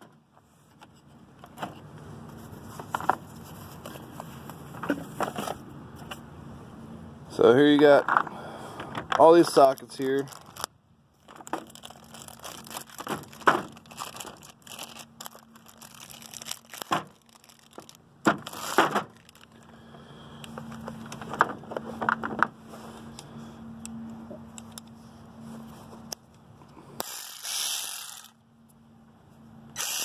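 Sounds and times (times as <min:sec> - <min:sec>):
plastic packaging crinkling: 0:09.6 - 0:19.6.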